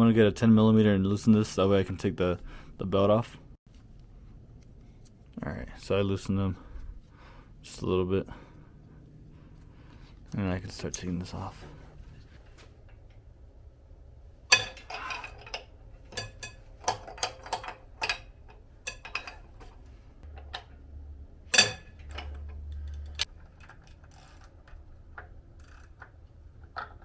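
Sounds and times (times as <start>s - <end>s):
metal tools clinking and knocking: 14.5s - 20.7s, 21.5s - 24.8s.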